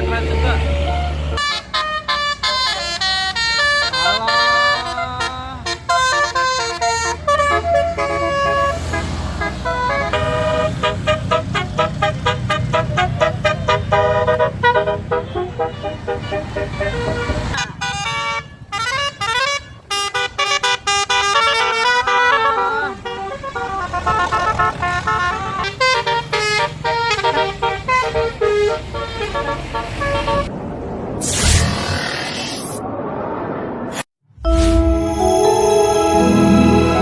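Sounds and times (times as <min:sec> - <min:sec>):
bus engine rumbling: 0:00.0 - 0:32.2
electric musical horn melody: 0:34.4 - 0:37.0.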